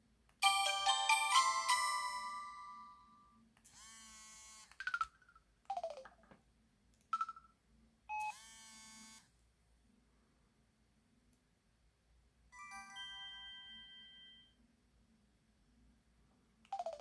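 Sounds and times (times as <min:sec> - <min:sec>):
phone ringtone: 0:00.4 - 0:03.2, 0:05.7 - 0:06.1, 0:12.6 - 0:14.5, 0:16.8 - 0:17.0.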